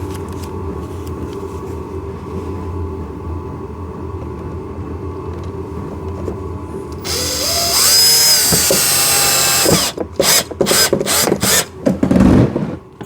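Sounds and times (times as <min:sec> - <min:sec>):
cordless drill driving a screw: 0:07.0 - 0:11.7.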